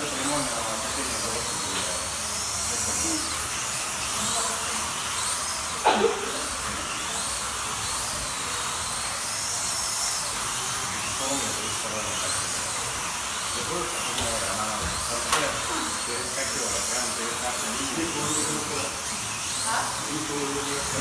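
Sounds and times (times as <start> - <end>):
slot car motors whining: 0.0 - 21.0.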